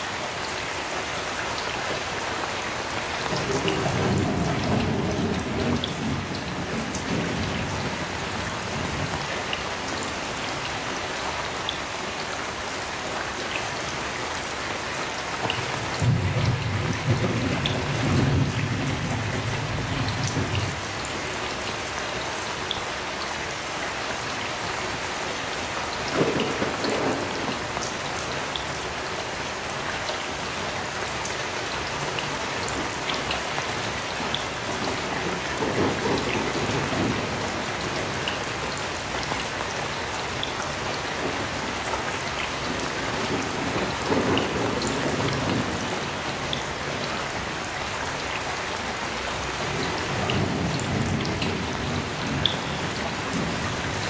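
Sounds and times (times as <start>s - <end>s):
heavy rain: 0.0s - 54.0s
thunder rumbling: 3.2s - 9.5s, 15.6s - 21.1s, 26.1s - 28.1s, 34.5s - 39.4s, 40.6s - 47.0s, 49.4s - 54.0s.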